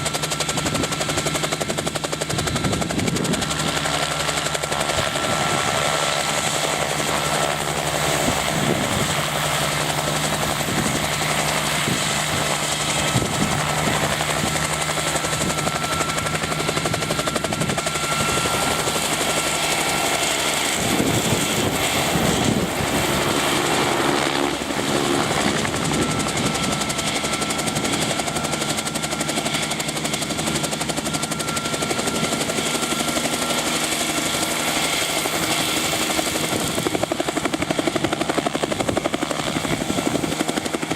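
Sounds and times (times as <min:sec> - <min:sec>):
helicopter engine and rotor drone: 0:00.0 - 0:40.9.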